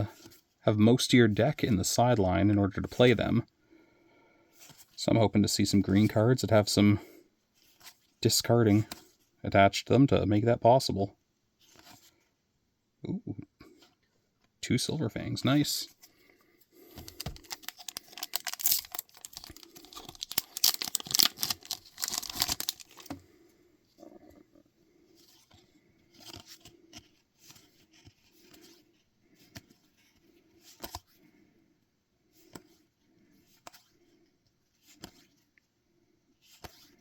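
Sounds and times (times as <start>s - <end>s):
cards being handled: 16.8s - 23.2s, 25.2s - 31.2s, 34.8s - 35.5s, 36.4s - 37.0s
wrapper tearing and crinkling: 17.0s - 23.2s.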